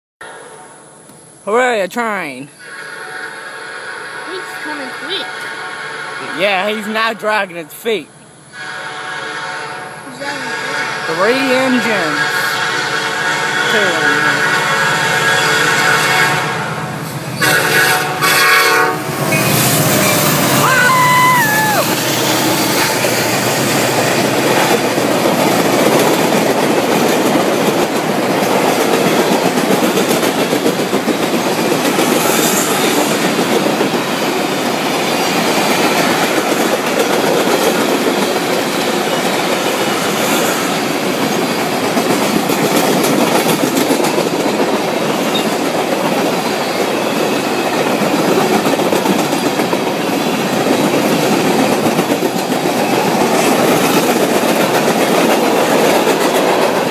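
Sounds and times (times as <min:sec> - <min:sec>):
freight train wheels rumbling on rail: 0:02.6 - 0:56.9
wheels clacking over rail joints: 0:19.3 - 0:56.9.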